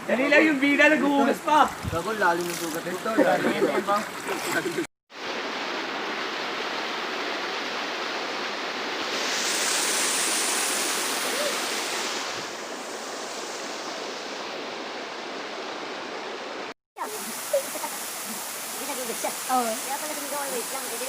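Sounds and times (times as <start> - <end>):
waterfall rushing: 4.5 - 21.0.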